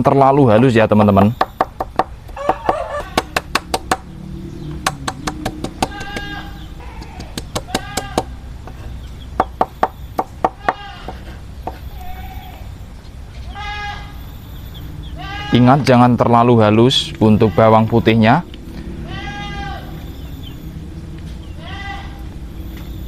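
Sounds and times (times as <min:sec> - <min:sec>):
bleat-like animal calls: 0:02.4 - 0:03.4, 0:05.8 - 0:08.4, 0:10.5 - 0:12.8, 0:13.4 - 0:14.4, 0:15.1 - 0:15.9, 0:17.2 - 0:18.2, 0:18.8 - 0:20.5, 0:21.5 - 0:22.4.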